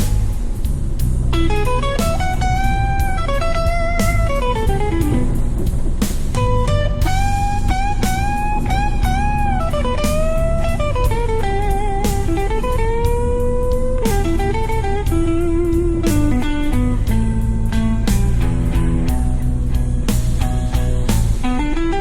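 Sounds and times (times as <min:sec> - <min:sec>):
electric guitar lead: 0:00.0 - 0:22.0
steady beat: 0:00.0 - 0:22.0.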